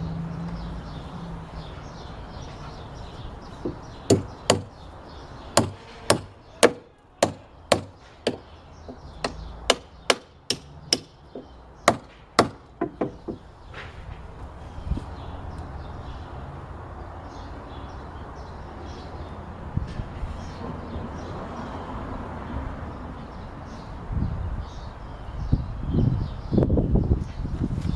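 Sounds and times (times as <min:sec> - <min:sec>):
hammer blows on wood: 0:03.6 - 0:04.8, 0:05.6 - 0:13.4.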